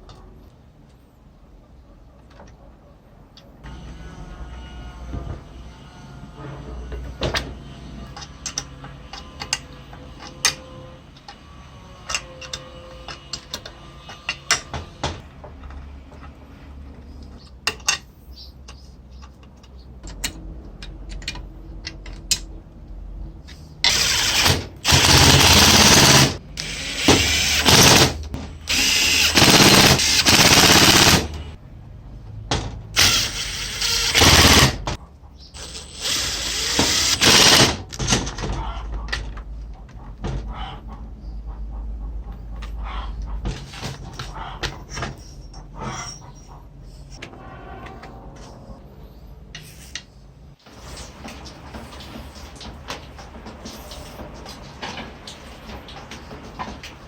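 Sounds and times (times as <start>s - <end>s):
handheld power tool running: 23.9s - 31.4s, 33.0s - 35.0s, 35.6s - 37.8s.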